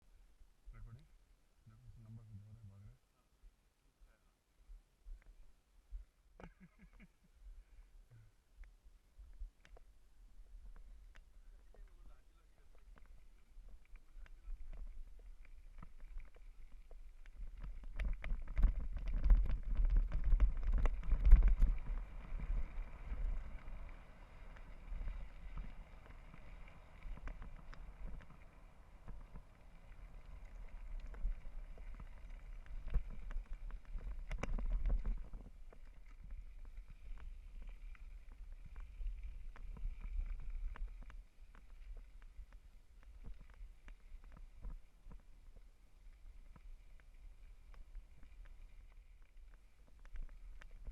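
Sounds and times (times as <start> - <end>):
wind rumbling on microphone: 7.4 - 50.9
bike rattling over bumps: 12.7 - 41.5.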